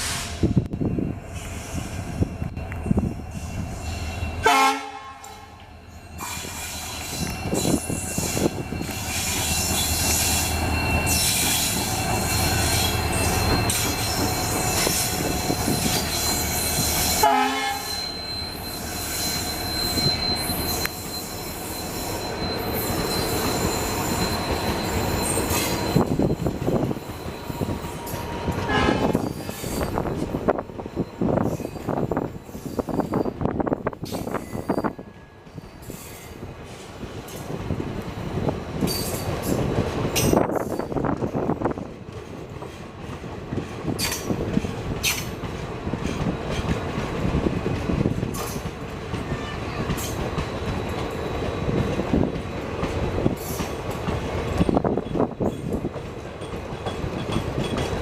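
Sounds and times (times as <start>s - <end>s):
train passing: 0.0s - 58.0s
wheels squealing on rails: 0.0s - 58.0s
train horn blasts: 4.4s - 5.6s, 17.2s - 18.1s, 28.5s - 29.2s.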